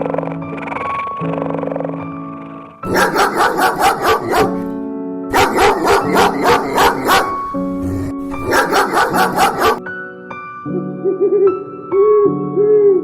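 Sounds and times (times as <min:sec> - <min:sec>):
background music: 0:01.4 - 0:13.0
dog barking rapidly: 0:02.8 - 0:09.8.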